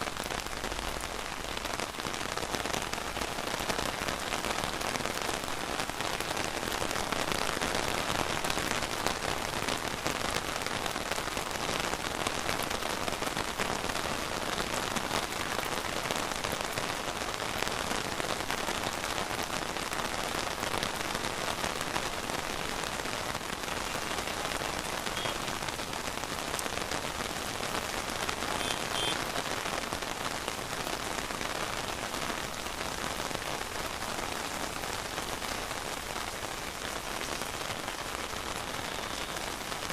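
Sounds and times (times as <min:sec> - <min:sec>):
steady rain falling: 0:00.0 - 0:39.9.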